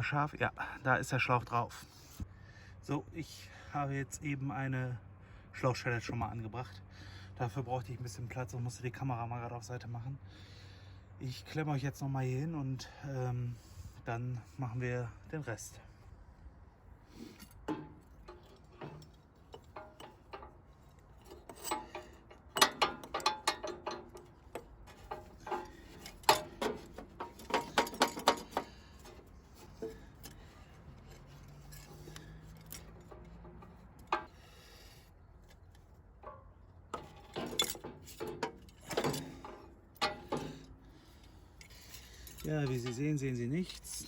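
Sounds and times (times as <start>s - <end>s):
metallic clinks and clicks: 17.3s - 34.3s, 37.0s - 43.9s.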